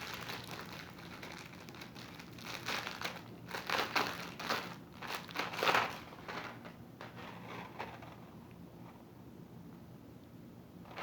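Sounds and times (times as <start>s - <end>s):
packaging crinkling: 0.0s - 6.7s.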